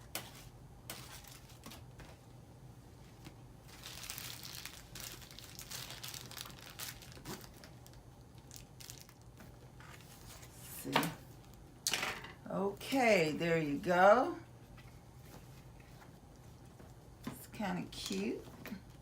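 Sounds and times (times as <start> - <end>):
wrapping crinkling: 0.2 - 2.0, 3.6 - 10.6.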